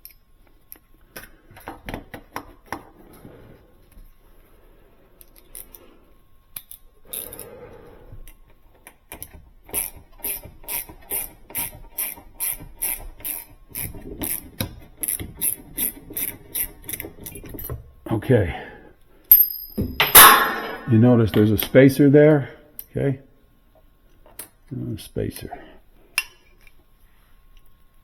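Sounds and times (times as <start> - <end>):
hand ratchet clicking: 6.6 - 7.4, 9.1 - 17.5
tool handling: 19.3 - 20.9.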